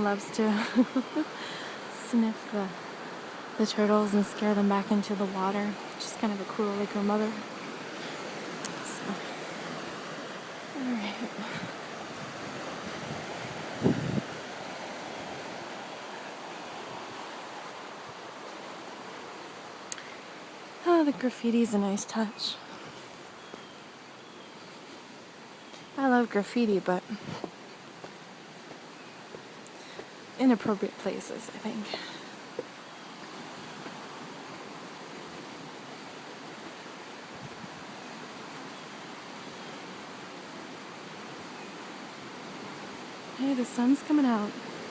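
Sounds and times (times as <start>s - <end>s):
river water rushing: 0.0s - 44.9s.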